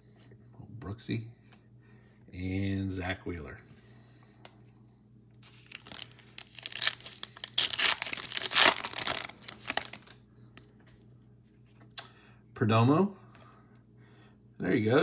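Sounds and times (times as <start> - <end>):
foil wrapper crinkling and tearing: 5.4 - 10.2.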